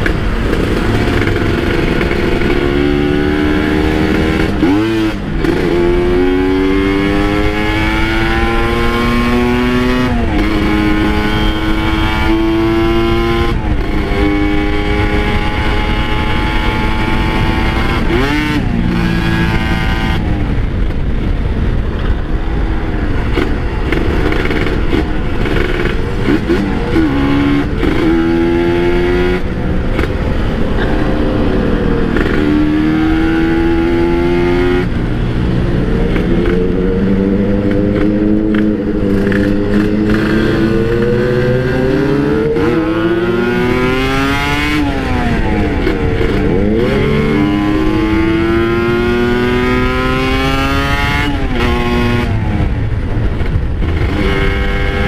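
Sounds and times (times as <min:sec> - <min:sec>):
motorcycle engine accelerating: 0:00.0 - 0:55.0.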